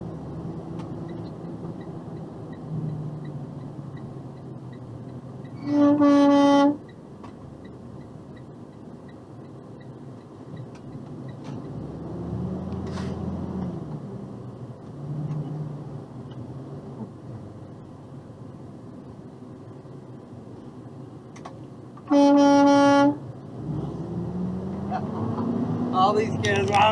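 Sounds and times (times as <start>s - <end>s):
truck engine and road rumble: 0.0s - 26.9s
truck air horn blast: 5.6s - 6.8s, 22.0s - 23.2s.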